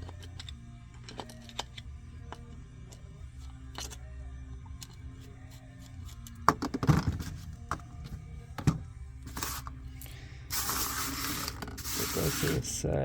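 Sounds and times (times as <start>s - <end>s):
metal parts knocking: 0.0s - 3.0s
spraying hiss: 10.5s - 12.8s.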